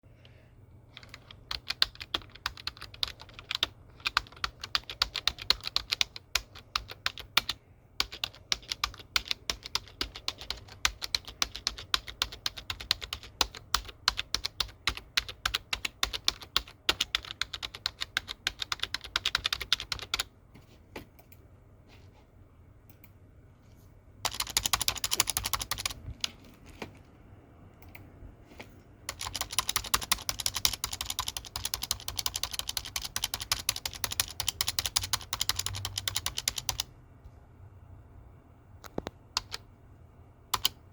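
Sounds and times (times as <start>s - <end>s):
typing on computer keyboard: 0.9s - 20.3s, 24.2s - 26.4s, 29.1s - 36.9s, 38.8s - 39.6s, 40.5s - 40.8s.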